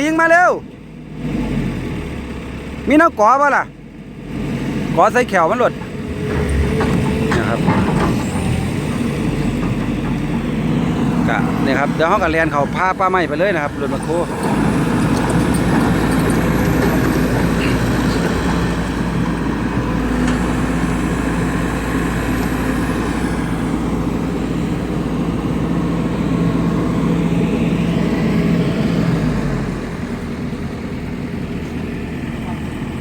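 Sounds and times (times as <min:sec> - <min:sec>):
heavy machinery engine drone: 0:00.6 - 0:33.0.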